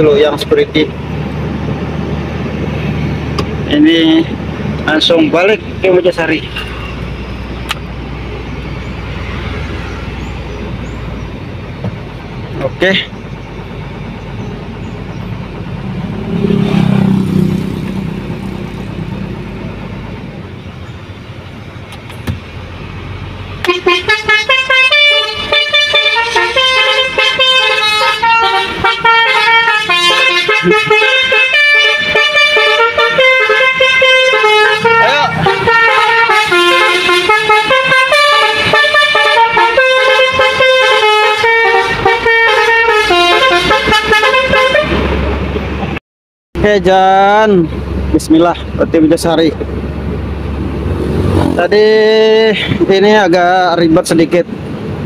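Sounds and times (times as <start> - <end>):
vehicle engine running: 0.0 - 46.0
musical air horn playing a tune: 23.6 - 45.0.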